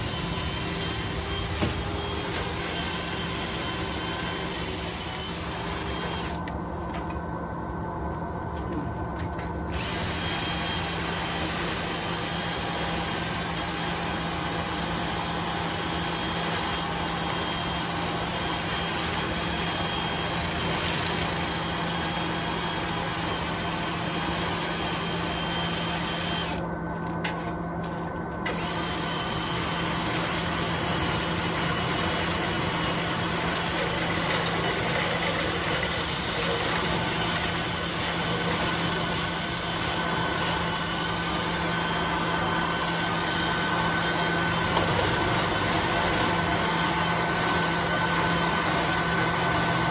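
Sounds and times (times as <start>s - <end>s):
power tool motor humming: 0.0s - 6.5s, 9.7s - 26.6s, 28.5s - 49.9s.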